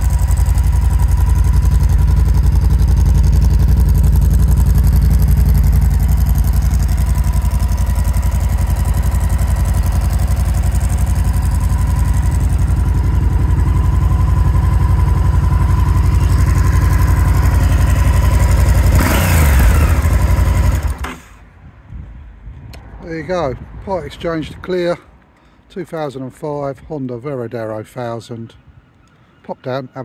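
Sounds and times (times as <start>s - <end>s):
motorcycle engine idling: 0.0s - 21.4s.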